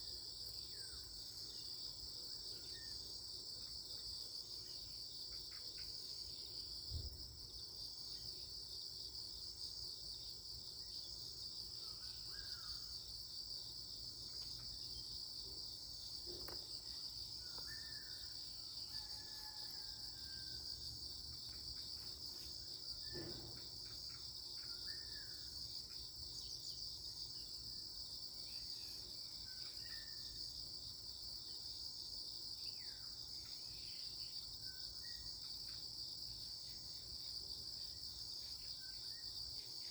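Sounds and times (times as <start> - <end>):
insect chorus trilling: 0.0 - 39.9
faint bird chirps: 10.7 - 13.1, 16.2 - 20.8, 21.4 - 27.5, 28.4 - 30.6.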